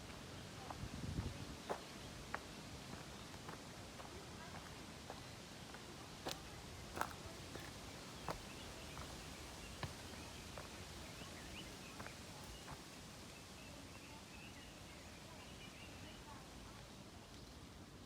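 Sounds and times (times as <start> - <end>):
faint outdoor ambience: 0.0 - 18.0
footsteps on dirt trail: 1.2 - 13.0.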